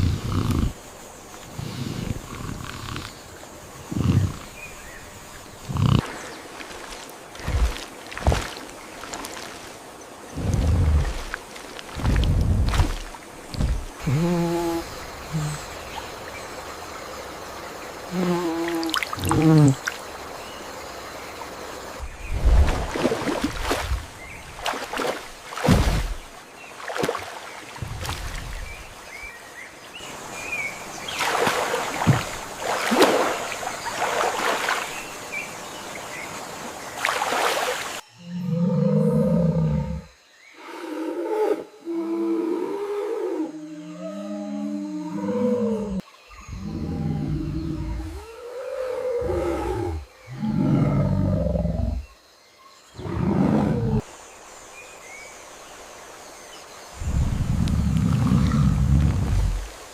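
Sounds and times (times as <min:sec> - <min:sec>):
jungle background: 0:00.0 - 0:59.9
water splashing and rushing: 0:04.8 - 0:38.0, 0:55.3 - 0:59.9
deep animal roars: 0:43.9 - 0:52.0.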